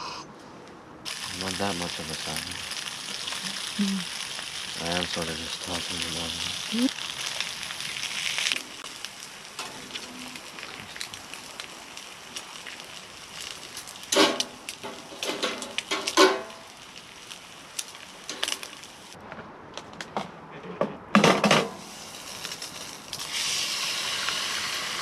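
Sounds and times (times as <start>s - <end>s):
food sizzling in a pan: 1.1s - 19.2s, 21.8s - 25.0s
cookware clanking and scraping: 15.1s - 16.6s.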